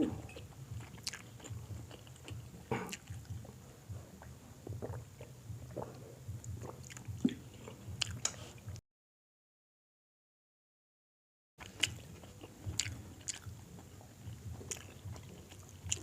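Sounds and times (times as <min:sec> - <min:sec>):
person chewing with wet mouth clicks: 0:00.3 - 0:03.6, 0:04.2 - 0:08.4, 0:11.6 - 0:13.6, 0:14.6 - 0:16.0.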